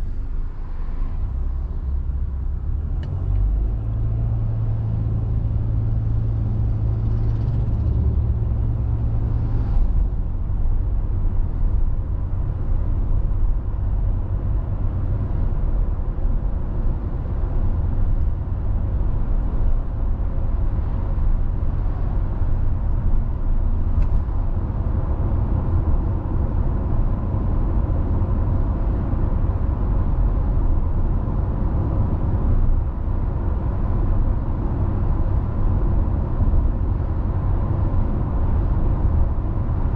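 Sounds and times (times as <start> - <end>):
car engine and tyre rumble: 0.0 - 39.9.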